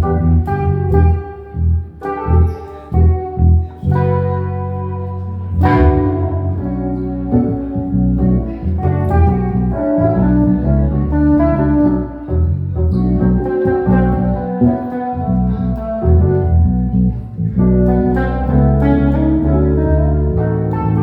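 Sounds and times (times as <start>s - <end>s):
bass line: 0.0s - 21.0s
guitar chords: 0.0s - 21.0s
organ-style keyboard chords: 4.5s - 16.9s
cymbal crash: 5.6s - 6.6s.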